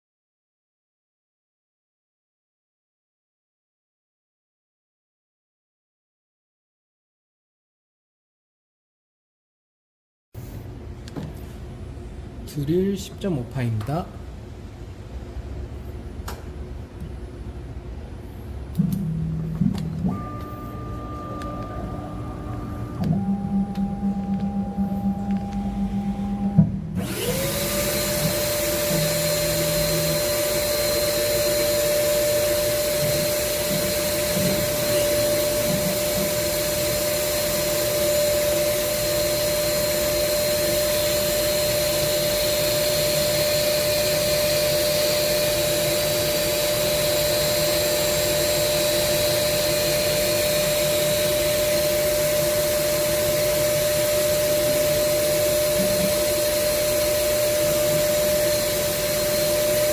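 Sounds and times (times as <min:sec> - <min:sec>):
grinder motor whine: 0:19.0 - 0:59.9.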